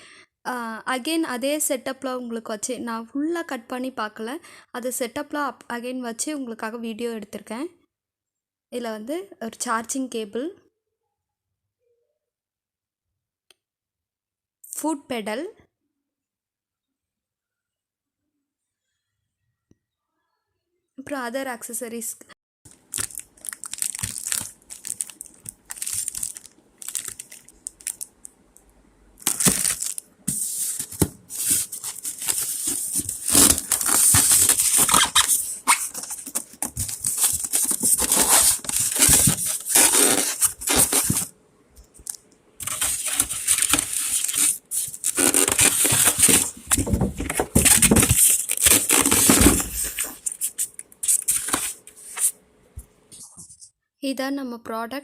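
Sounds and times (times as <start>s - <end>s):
packaging rustling and tearing: 22.7s - 28.3s, 29.2s - 41.3s, 42.0s - 52.4s.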